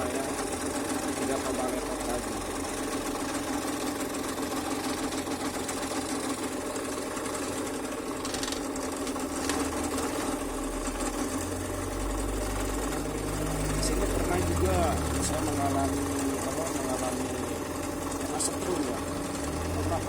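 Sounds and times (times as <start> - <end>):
deep hum: 9.8 - 16.7.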